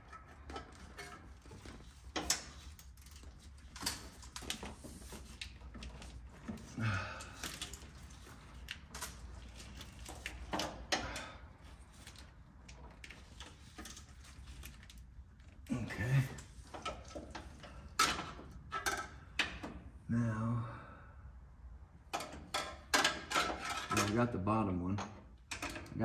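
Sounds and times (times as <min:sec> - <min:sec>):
hand tools clicking and knocking: 0:00.0 - 0:11.4, 0:16.7 - 0:19.7, 0:22.1 - 0:24.2, 0:25.0 - 0:26.0.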